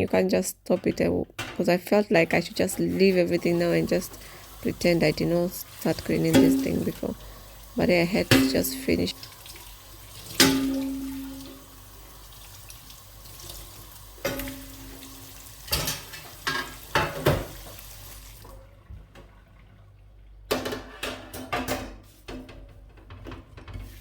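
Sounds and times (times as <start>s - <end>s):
running tap: 2.3s - 18.6s.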